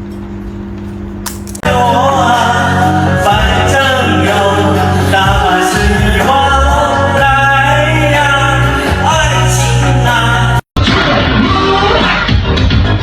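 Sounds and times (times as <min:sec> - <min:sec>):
person singing: 0:01.6 - 0:10.6
music with bass line: 0:01.6 - 0:13.0.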